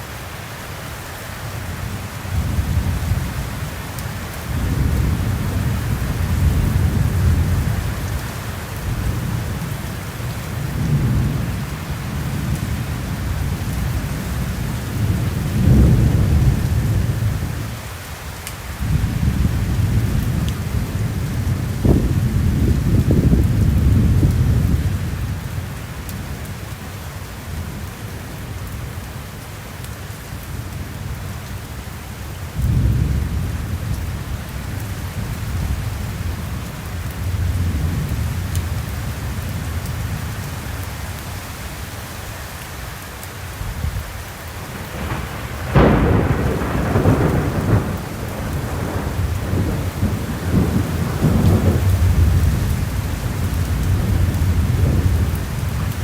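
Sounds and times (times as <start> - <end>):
steady rain: 0.0 - 56.0
rolling thunder: 4.5 - 8.2, 8.8 - 17.6, 18.8 - 25.4, 44.7 - 56.0
sharp thunderclap: 44.7 - 55.9.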